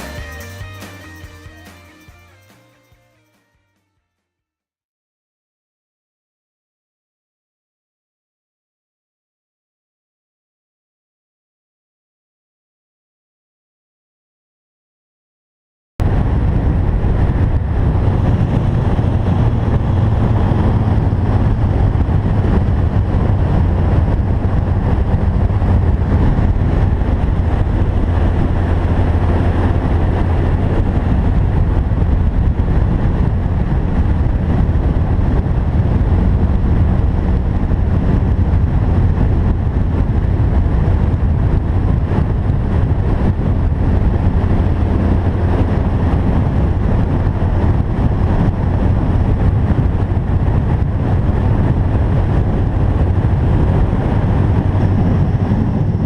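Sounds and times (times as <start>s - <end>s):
loud low rushing noise: 16.0s - 56.0s.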